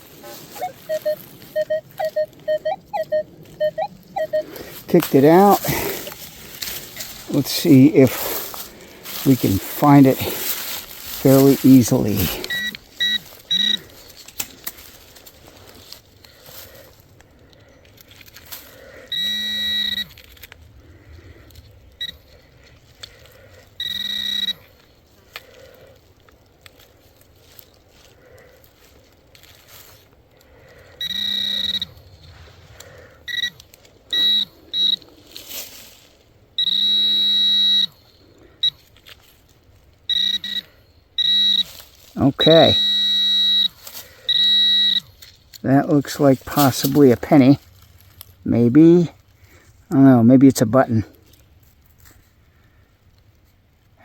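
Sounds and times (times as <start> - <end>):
soil scraping and clicks: 0.0 - 36.9, 37.8 - 54.0
metal detector buzz-beep: 0.6 - 6.0, 11.2 - 13.9, 19.0 - 20.2, 23.8 - 24.6, 31.0 - 32.0, 33.3 - 35.0, 36.6 - 38.0, 40.1 - 41.7, 42.4 - 45.1.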